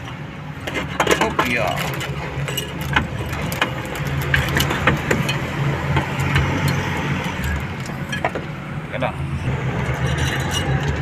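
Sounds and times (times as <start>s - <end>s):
truck engine idling: 0.0s - 11.0s
sharp clicks and knocks: 0.6s - 8.5s.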